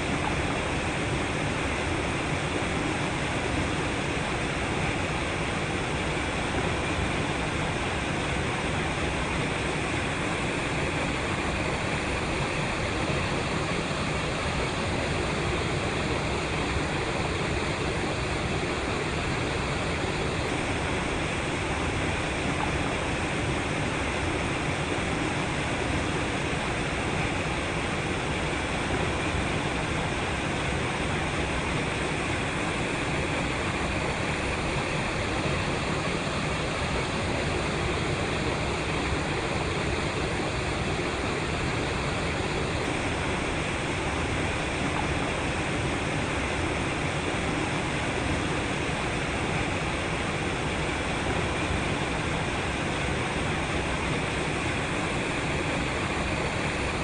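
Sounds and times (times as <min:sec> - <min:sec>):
water rushing over rocks: 0:00.0 - 0:57.0.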